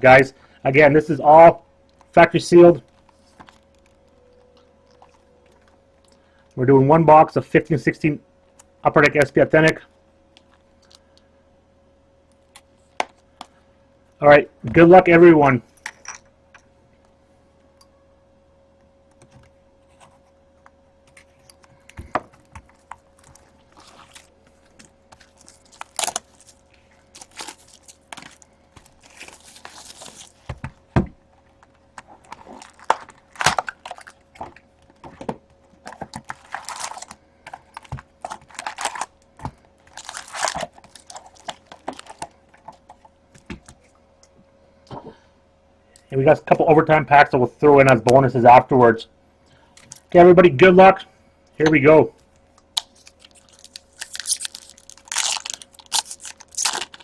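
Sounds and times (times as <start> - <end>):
plastic wrap tearing and crinkling: 22.7 - 30.6, 31.6 - 35.0, 35.8 - 42.9, 52.8 - 57.0.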